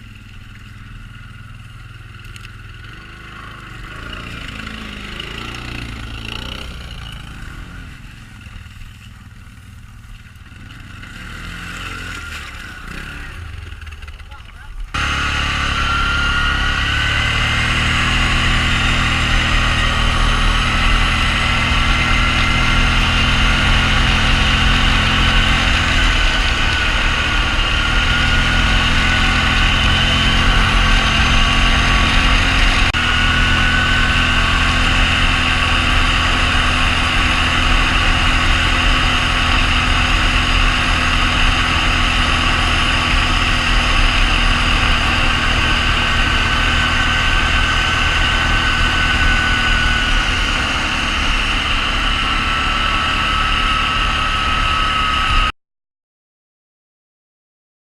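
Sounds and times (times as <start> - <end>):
quad bike engine idling: 0.0 - 55.4
thin high whine: 15.0 - 55.5.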